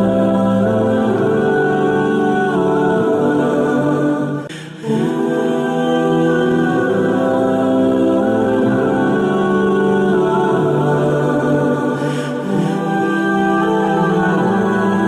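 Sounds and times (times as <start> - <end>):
wordless choral voices: 0.0 - 15.0.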